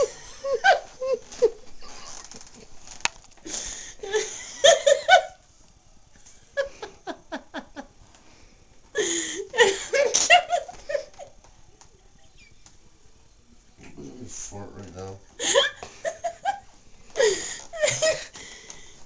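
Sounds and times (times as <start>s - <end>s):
women laughing hard: 0.0s - 2.7s, 4.0s - 5.4s, 6.4s - 7.9s, 9.0s - 11.4s, 15.4s - 18.4s.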